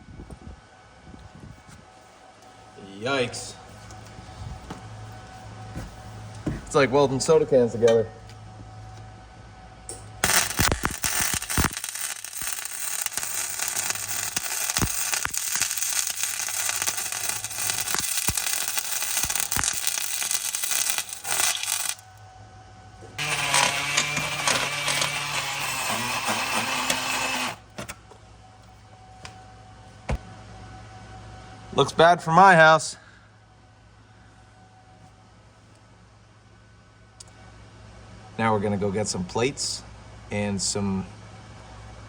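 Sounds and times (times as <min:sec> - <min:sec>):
faint steady whine: 0:00.0 - 0:42.0
welding arc crackling: 0:09.9 - 0:22.1, 0:23.2 - 0:27.7.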